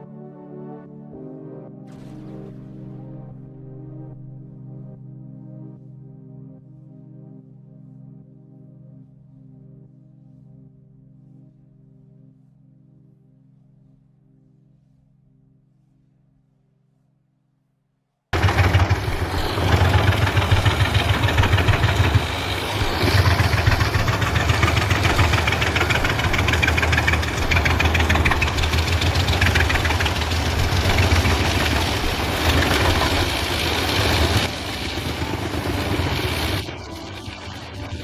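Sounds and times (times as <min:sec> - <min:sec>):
wood chipper running: 0:18.4 - 0:38.0.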